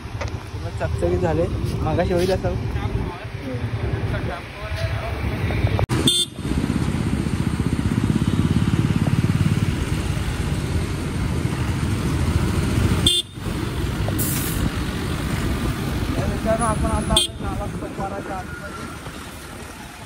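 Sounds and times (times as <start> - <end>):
road noise: 0.0 - 20.0
motorcycle engine running: 5.9 - 18.1.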